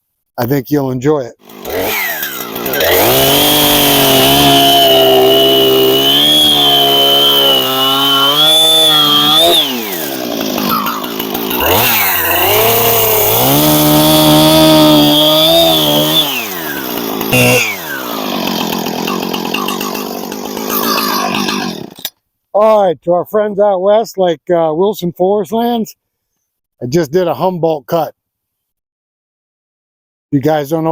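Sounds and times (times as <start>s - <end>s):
chainsaw cutting wood: 1.4s - 22.2s.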